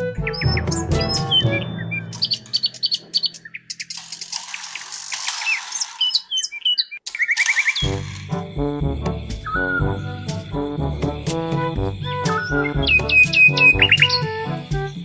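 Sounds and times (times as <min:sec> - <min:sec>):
music track: 0:00.0 - 0:03.2, 0:07.8 - 0:15.0
birds chirping: 0:00.3 - 0:04.3.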